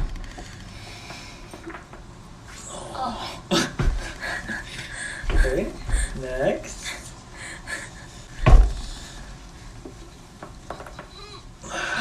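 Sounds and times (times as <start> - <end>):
loud thump: 8.4 - 8.9.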